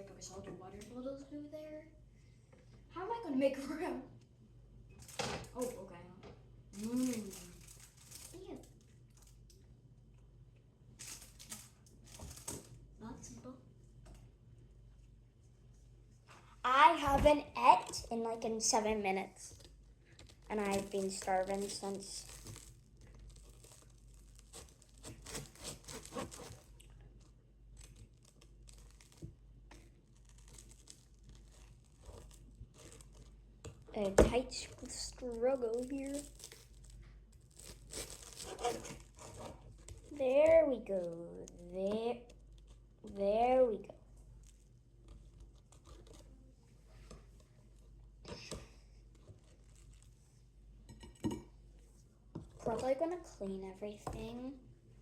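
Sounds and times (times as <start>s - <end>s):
food packaging crinkling: 6.8s - 9.5s, 11.0s - 12.8s, 19.6s - 33.9s, 34.5s - 40.2s.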